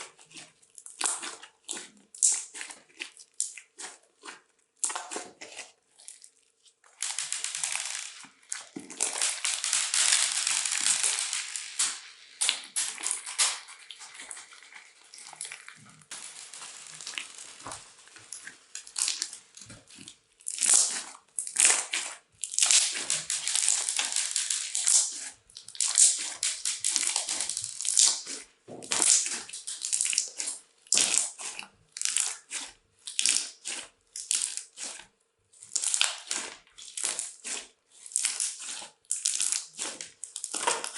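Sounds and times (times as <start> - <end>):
slime crackling and popping: 0.1 - 35.0, 35.6 - 40.9.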